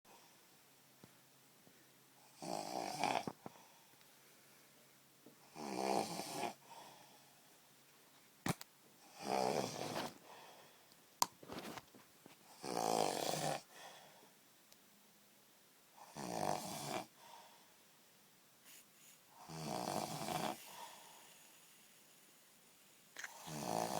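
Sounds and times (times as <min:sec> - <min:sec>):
person snoring: 0:02.4 - 0:03.4, 0:05.6 - 0:06.6, 0:09.1 - 0:10.1, 0:12.6 - 0:13.7, 0:16.1 - 0:17.2, 0:19.4 - 0:21.4, 0:23.2 - 0:23.9.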